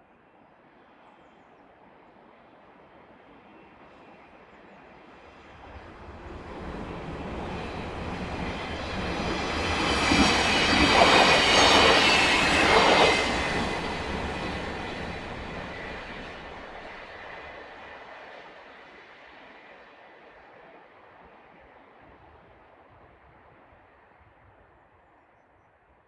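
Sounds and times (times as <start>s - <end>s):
train passing rumble: 5.1s - 18.1s.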